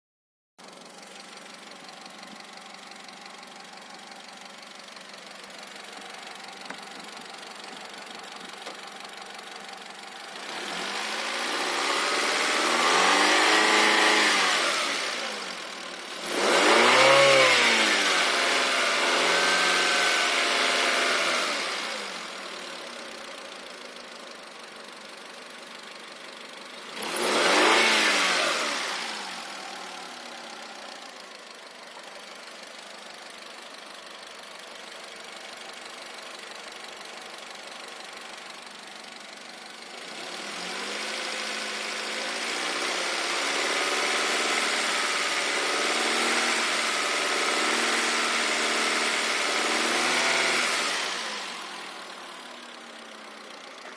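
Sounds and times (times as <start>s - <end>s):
car engine idling with knock: 0.6s - 10.5s, 29.3s - 33.4s
car engine revving: 10.3s - 22.3s, 26.9s - 30.8s, 40.0s - 52.4s.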